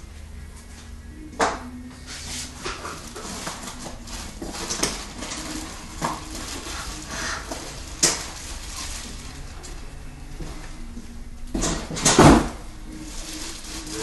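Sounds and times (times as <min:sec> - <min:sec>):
packaging rustling: 0:02.4 - 0:09.8, 0:13.0 - 0:14.0.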